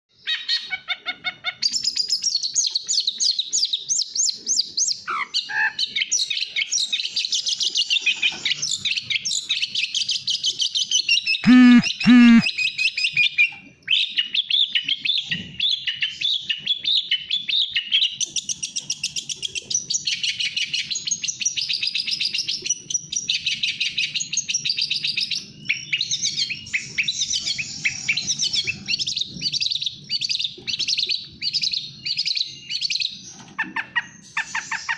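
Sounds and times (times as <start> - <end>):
harsh bird notes: 11.4 - 12.5
bird chattering trills: 11.4 - 12.6.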